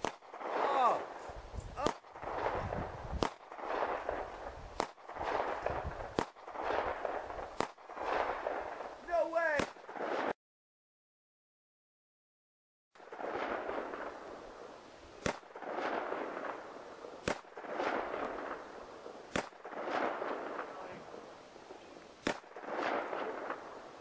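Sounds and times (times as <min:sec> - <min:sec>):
gunshot cracks: 0:01.8 - 0:04.1, 0:04.8 - 0:08.5, 0:09.5 - 0:10.4, 0:15.2 - 0:16.6, 0:17.2 - 0:18.6, 0:19.3 - 0:21.0, 0:22.2 - 0:23.6.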